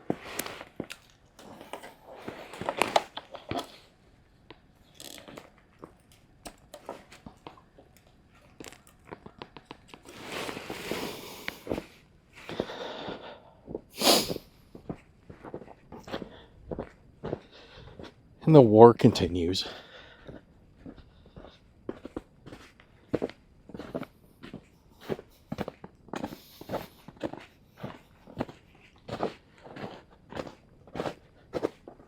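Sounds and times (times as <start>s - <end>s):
rustling: 8.5s - 11.8s.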